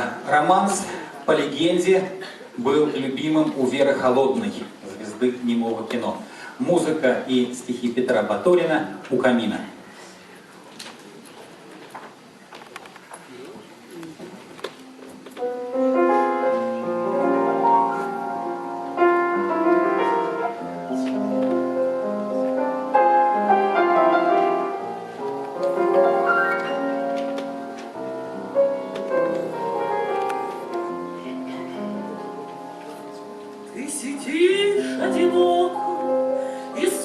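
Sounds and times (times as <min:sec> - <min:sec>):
solo piano piece: 0:15.4 - 0:37.0.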